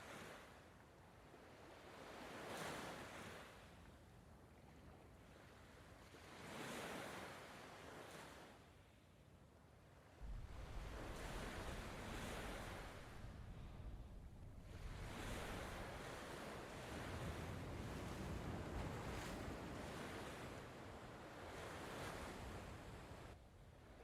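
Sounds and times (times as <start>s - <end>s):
strong wind: 10.2s - 23.4s
sea surf: 10.2s - 24.0s.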